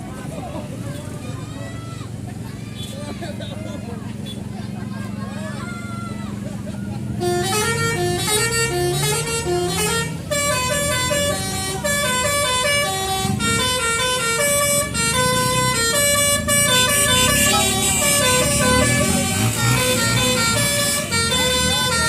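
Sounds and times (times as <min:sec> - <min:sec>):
bus engine running: 0:00.0 - 0:22.0
musical bus horn tune: 0:07.1 - 0:22.0.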